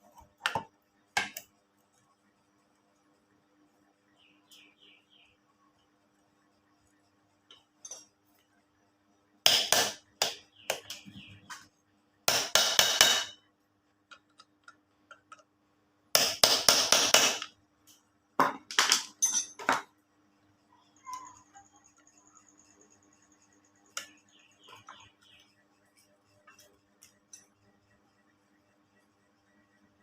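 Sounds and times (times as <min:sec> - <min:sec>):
metal tools knocking and clinking: 0:07.5 - 0:08.2, 0:18.4 - 0:19.9.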